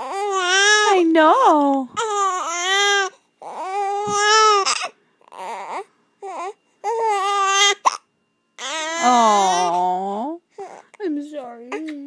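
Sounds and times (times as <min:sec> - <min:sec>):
baby crying: 0:00.0 - 0:01.0, 0:02.0 - 0:09.9.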